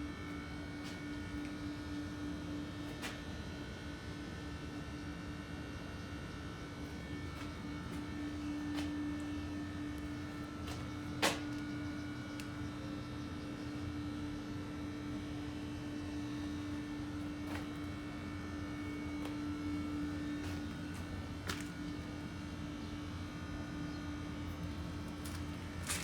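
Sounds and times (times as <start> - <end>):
machinery humming: 6.2 - 26.0.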